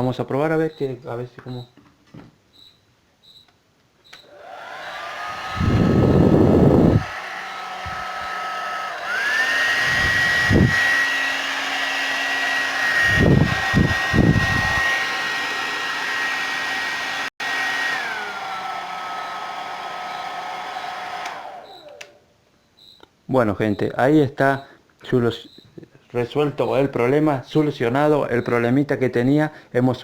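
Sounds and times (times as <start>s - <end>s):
hair dryer motor whine: 4.2s - 22.2s
air gusts buffeting microphone: 5.4s - 7.1s, 13.0s - 14.9s.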